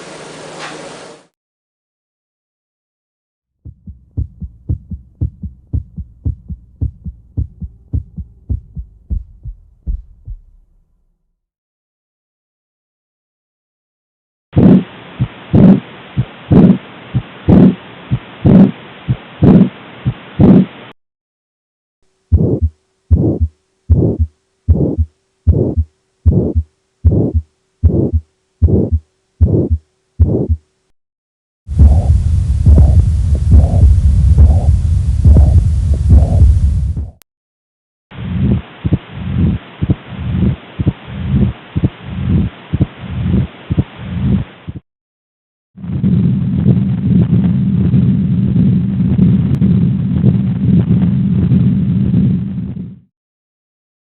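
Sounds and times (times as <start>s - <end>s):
heartbeat lub-dub: 3.7s - 10.8s, 14.6s - 20.7s, 22.3s - 30.6s, 31.7s - 37.2s, 38.3s - 44.8s
faint steady hum: 22.1s - 30.9s, 31.7s - 37.2s.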